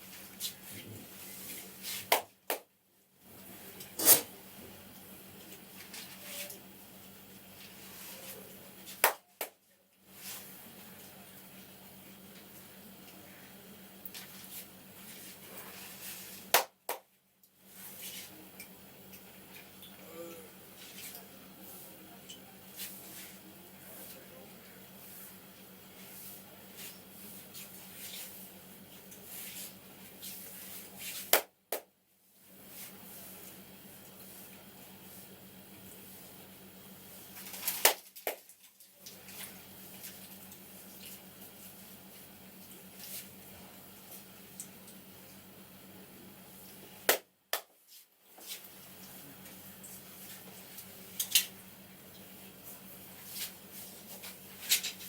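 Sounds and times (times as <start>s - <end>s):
hands rubbing head and neck: 0.1s - 2.3s, 29.2s - 31.5s
low steady hum: 17.3s - 31.1s.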